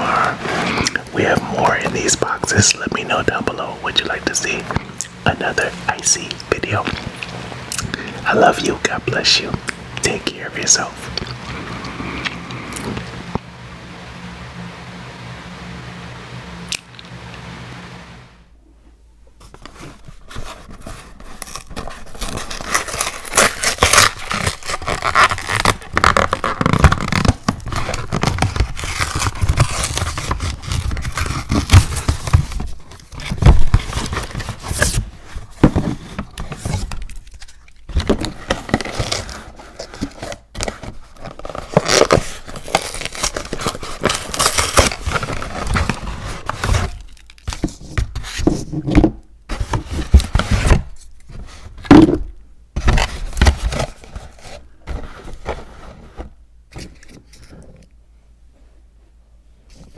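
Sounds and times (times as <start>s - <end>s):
scraping and crinkling handling noise: 0.0s - 13.4s, 18.8s - 58.8s.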